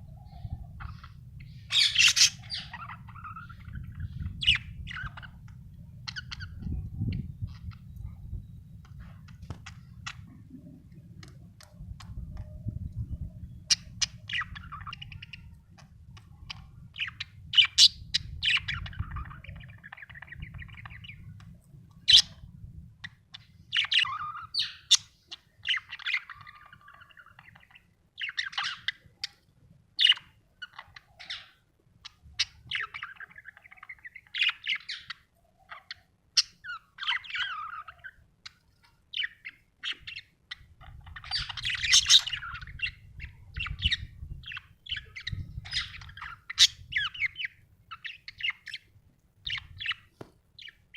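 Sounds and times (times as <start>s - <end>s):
budgerigar chirping and warbling: 0.3s - 5.4s, 6.1s - 7.8s, 13.6s - 15.6s, 23.7s - 29.4s, 30.0s - 50.9s.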